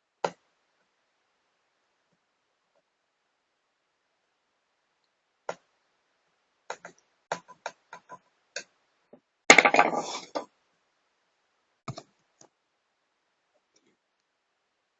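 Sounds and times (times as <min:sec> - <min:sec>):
laptop clicks and taps: 0:06.7 - 0:08.7.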